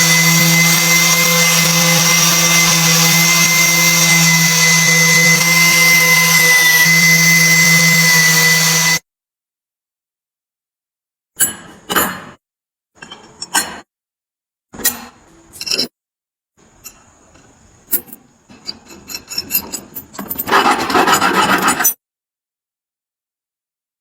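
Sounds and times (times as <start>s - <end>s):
hand scraping metal: 16.6s - 22.0s.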